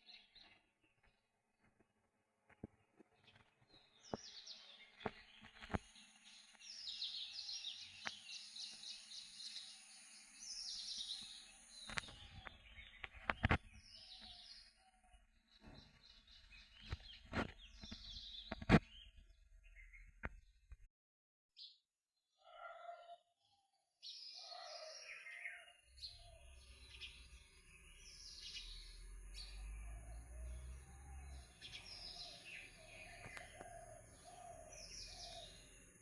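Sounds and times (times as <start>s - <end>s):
songbirds trilling: 3.2s - 20.1s, 24.2s - 36.0s.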